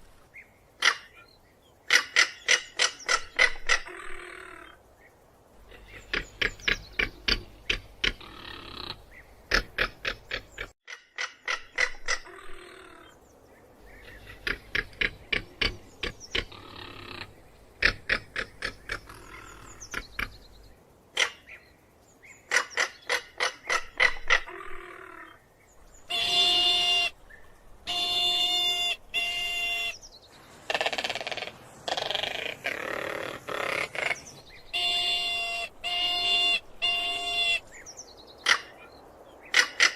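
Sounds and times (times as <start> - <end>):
harsh bird calls: 0.3 - 39.9
bird rattling calls: 5.6 - 12.5, 13.9 - 21.6, 27.9 - 37.6.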